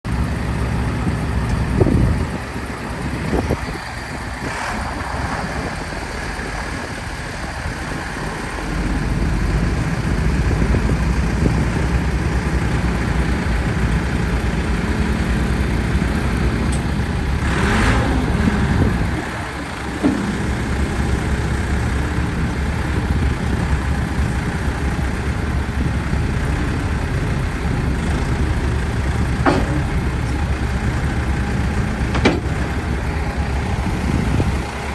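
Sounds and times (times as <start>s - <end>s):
diesel engine running: 0.0s - 34.9s
knocks: 29.4s - 30.0s.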